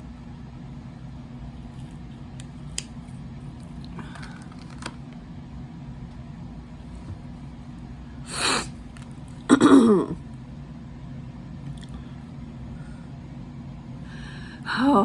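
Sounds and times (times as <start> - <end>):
person sneezing: 8.3 - 8.8, 9.5 - 10.2
sharp in-breath: 14.1 - 14.6.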